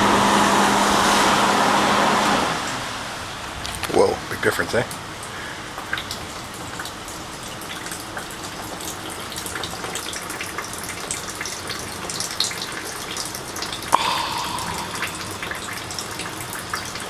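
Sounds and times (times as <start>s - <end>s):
heavy rain pouring: 13.9s - 16.9s.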